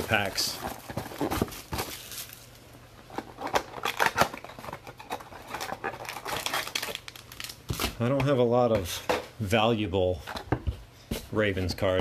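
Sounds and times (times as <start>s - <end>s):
wrap and cardboard crinkling: 0.0s - 8.2s
cards and boxes being handled: 0.0s - 9.3s.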